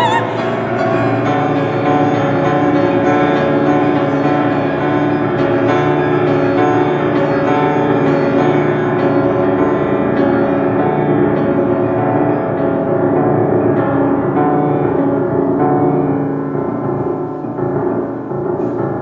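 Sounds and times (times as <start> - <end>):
piano playing slow chords: 0.0 - 19.0.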